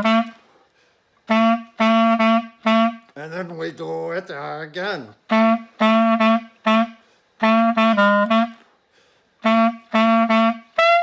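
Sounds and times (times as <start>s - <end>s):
clarinet playing short repeated notes: 0.0s - 0.5s, 1.2s - 3.6s, 5.1s - 8.8s, 9.4s - 11.0s.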